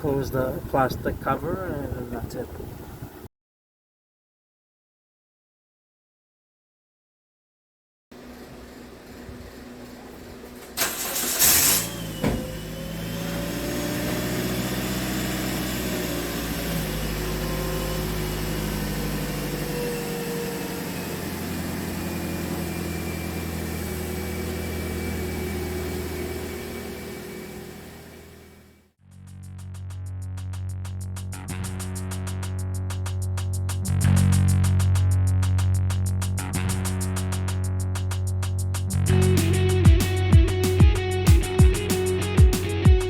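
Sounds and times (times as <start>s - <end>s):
car engine idling: 8.2s - 28.8s
starter motor cranking: 9.3s - 28.7s.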